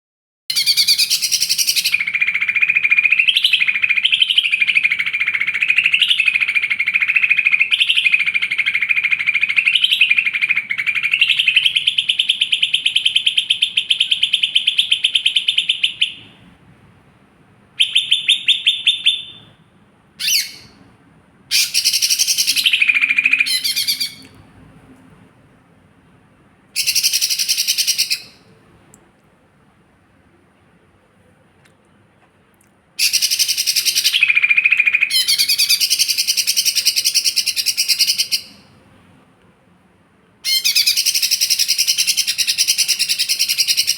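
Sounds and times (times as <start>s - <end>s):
bird singing fast trills: 0.5s - 16.3s, 17.8s - 19.5s, 20.2s - 20.8s, 21.5s - 24.3s, 26.8s - 28.4s, 33.0s - 38.7s, 40.4s - 43.9s.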